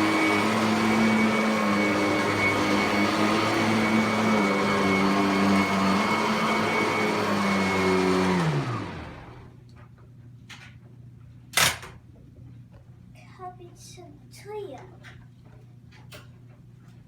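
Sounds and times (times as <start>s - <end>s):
vacuum cleaner motor whining: 0.0s - 9.5s.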